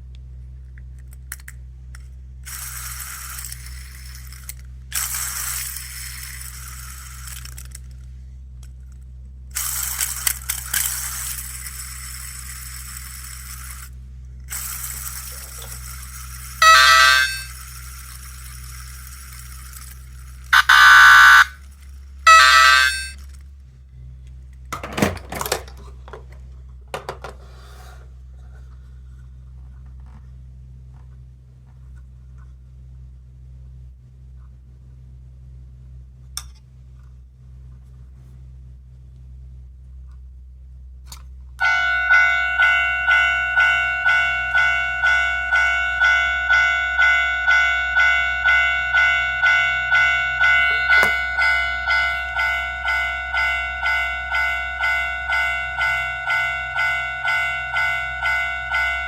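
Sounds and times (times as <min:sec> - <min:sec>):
buzzer-like electronic tones: 0:14.5 - 0:18.8, 0:20.5 - 0:21.7, 0:22.3 - 0:23.2, 0:41.6 - 0:59.0.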